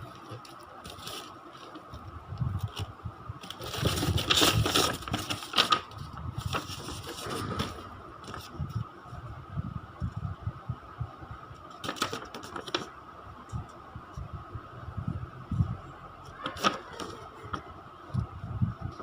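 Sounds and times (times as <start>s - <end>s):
packaging crinkling and rustling: 0.0s - 8.6s, 11.7s - 12.9s, 16.3s - 17.7s.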